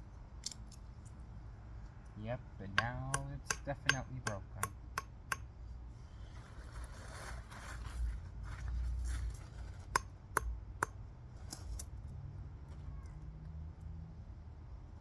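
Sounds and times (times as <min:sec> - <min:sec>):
scraping rustle: 0:06.0 - 0:09.9.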